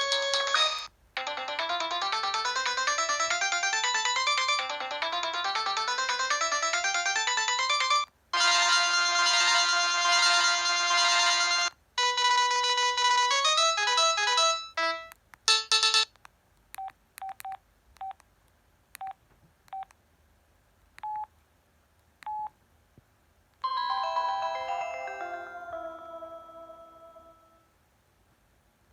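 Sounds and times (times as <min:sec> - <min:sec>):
chiming ringtone: 0:00.0 - 0:16.1, 0:23.6 - 0:27.7
synth ringtone: 0:00.0 - 0:16.1, 0:23.6 - 0:27.6.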